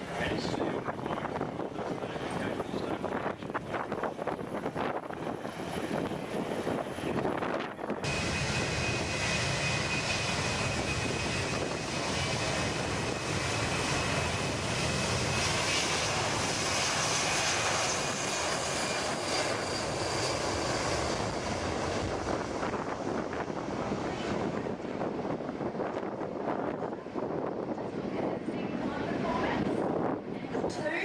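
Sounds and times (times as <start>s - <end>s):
aircraft engine passing: 0.0s - 31.0s.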